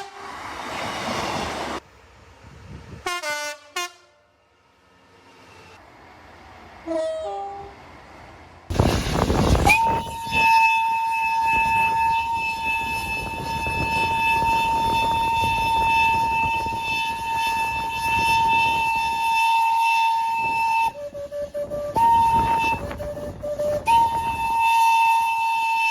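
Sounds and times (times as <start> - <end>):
train horn blast: 0.0 - 0.4, 3.0 - 4.4, 6.8 - 7.8, 9.5 - 25.9
train rumble: 0.0 - 25.9
loud rush of noise: 8.7 - 10.2.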